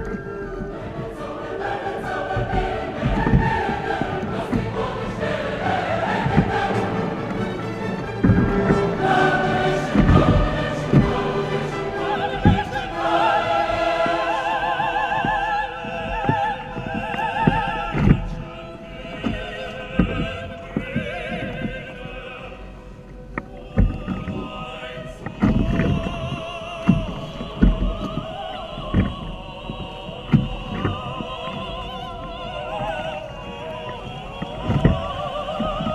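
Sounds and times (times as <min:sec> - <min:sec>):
low thumps: 0:00.0 - 0:18.4
opera-style singing: 0:00.0 - 0:35.9.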